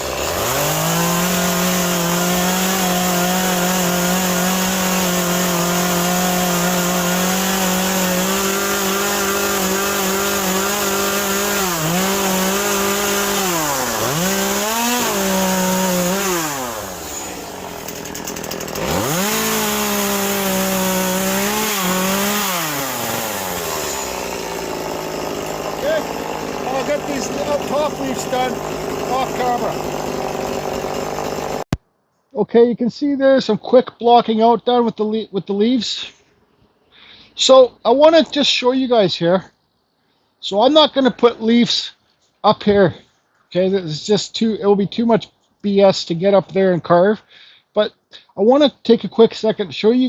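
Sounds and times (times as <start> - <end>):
chainsaw cutting wood: 0.0 - 31.8.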